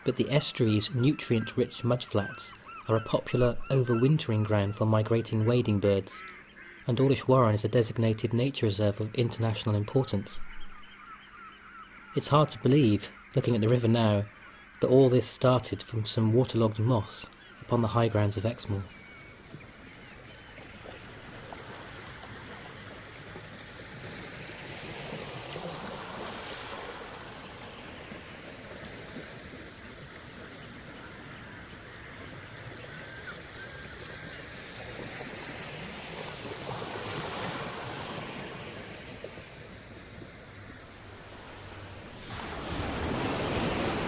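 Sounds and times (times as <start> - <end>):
sea surf washing up shore: 20.6 - 44.0.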